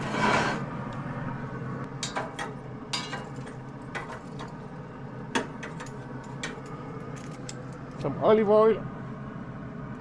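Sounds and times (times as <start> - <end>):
steady low hum: 0.0 - 10.0
metallic clinks and knocks: 2.0 - 4.6, 5.4 - 7.8.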